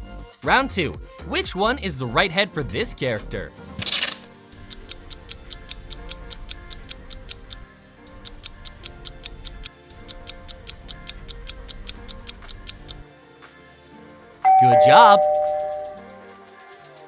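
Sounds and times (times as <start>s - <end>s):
light background music: 0.4s - 17.0s
timer ticking quickly: 4.6s - 13.0s.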